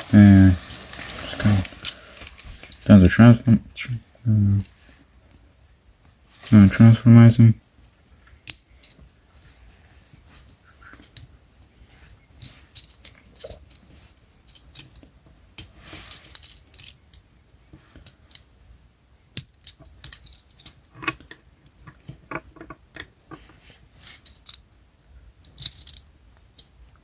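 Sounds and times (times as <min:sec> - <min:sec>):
plastic rustling scrape: 0:00.0 - 0:02.8
plastic toy joints clicking: 0:25.5 - 0:26.0.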